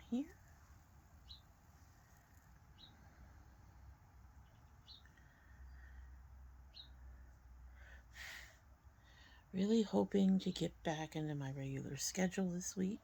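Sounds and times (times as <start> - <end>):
bird chirping: 1.1 - 3.6, 4.3 - 6.0, 6.6 - 7.2.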